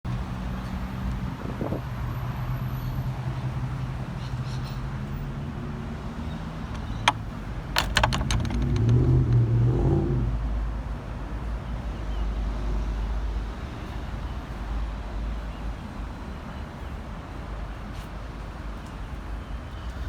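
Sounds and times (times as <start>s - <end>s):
sharp clicks: 6.7s - 9.5s.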